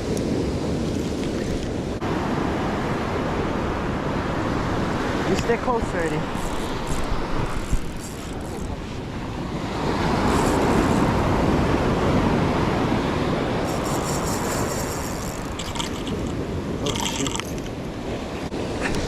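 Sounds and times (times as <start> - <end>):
ocean surf washing ashore: 0.0 - 19.0
wind buffeting microphone: 0.0 - 19.0
fast mechanical rattle: 6.2 - 8.9, 10.3 - 11.1, 13.7 - 16.1.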